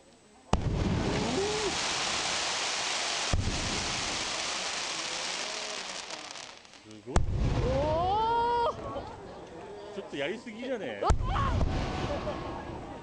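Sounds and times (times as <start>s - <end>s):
firework bang: 0.5s - 8.0s
firework crackling: 0.5s - 8.4s.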